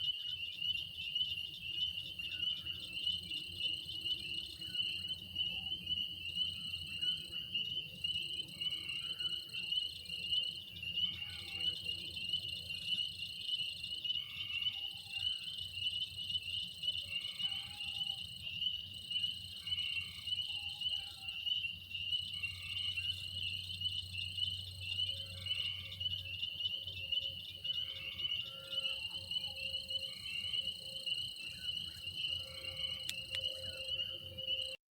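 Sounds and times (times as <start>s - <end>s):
crickets and insects trilling: 0.0s - 34.8s
frogs calling: 0.0s - 34.8s
high insect songs: 0.0s - 34.8s.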